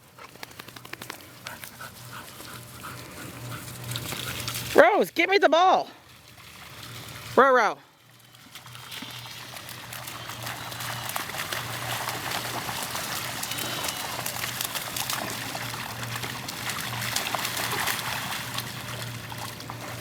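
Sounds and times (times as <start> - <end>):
dogs splashing in water: 0.3 - 5.0, 6.0 - 20.0
faint low hum: 5.8 - 20.0.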